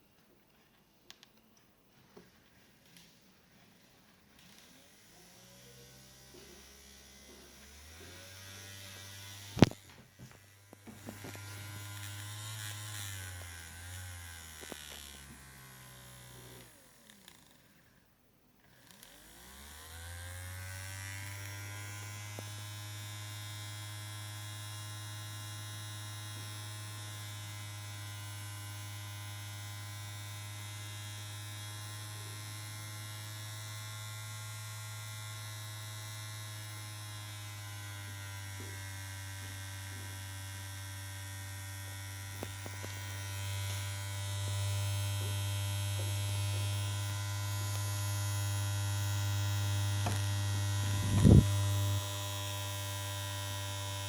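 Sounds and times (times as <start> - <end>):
strong low hum: 50.7 - 52.0.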